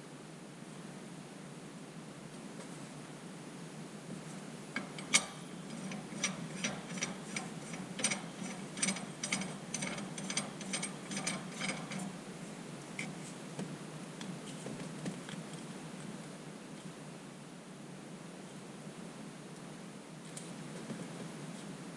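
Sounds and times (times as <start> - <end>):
hand ratchet clicking: 4.8 - 12.2.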